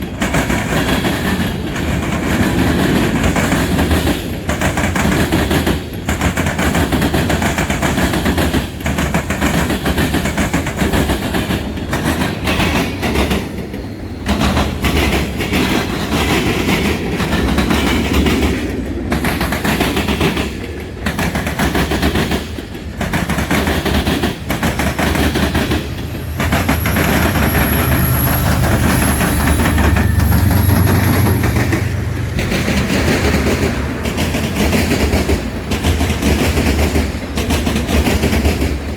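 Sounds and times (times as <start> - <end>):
train wheels clattering on rails: 0.0 - 38.9
high wheel squeal: 25.1 - 32.2.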